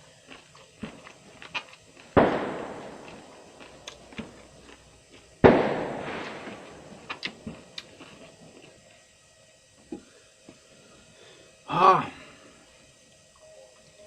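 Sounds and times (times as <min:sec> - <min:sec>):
chewing crunches: 0:00.1 - 0:05.4, 0:06.2 - 0:08.8
crunch of biting raw vegetable: 0:00.3 - 0:02.2, 0:03.0 - 0:05.2.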